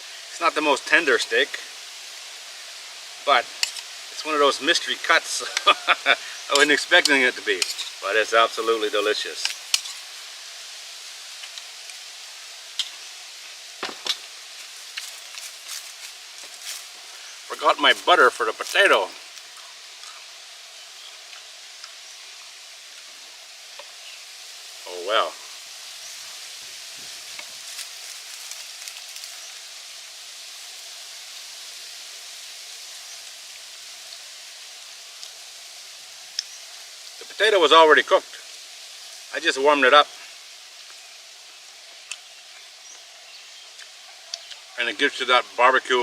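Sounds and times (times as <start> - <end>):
food sizzling over wood fire: 0.0 - 46.0
fire pops and crackles: 3.2 - 20.3, 26.0 - 37.5, 42.0 - 42.8.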